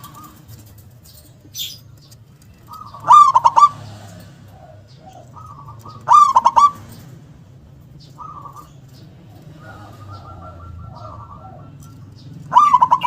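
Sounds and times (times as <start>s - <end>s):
dove cooing: 0.0s - 0.9s, 2.4s - 13.0s.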